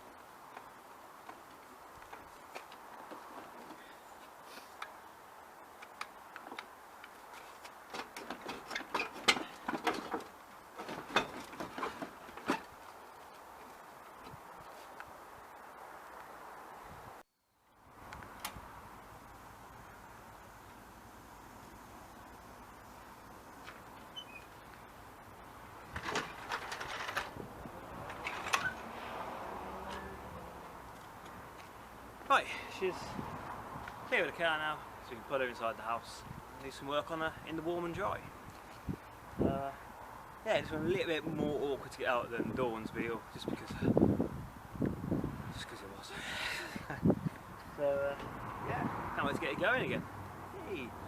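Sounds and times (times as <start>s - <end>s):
clicks and clunks of engine handling: 5.8s - 13.0s, 25.9s - 27.4s, 28.0s - 28.8s.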